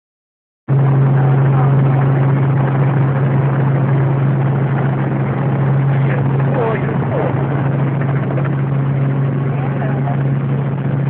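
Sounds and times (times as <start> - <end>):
helicopter running: 0.7 - 11.0.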